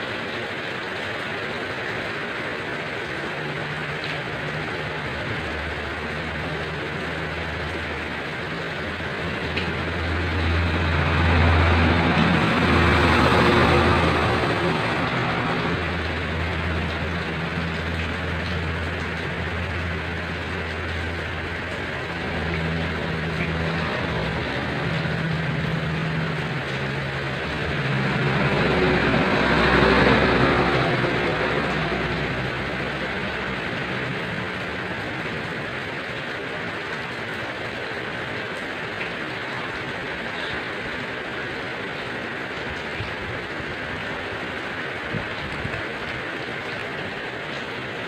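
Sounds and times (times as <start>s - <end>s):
steady rain hiss: 0.0s - 48.0s
low engine hum: 2.3s - 35.9s
vehicle passing: 3.2s - 35.7s.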